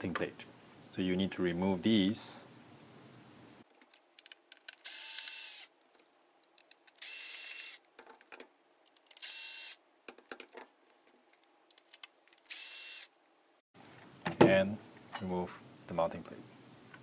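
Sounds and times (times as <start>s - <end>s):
small clicks and handling: 3.7s - 9.4s, 10.1s - 12.6s
power screwdriver bursts: 4.8s - 5.7s, 7.0s - 7.8s, 9.2s - 9.8s, 12.5s - 13.1s.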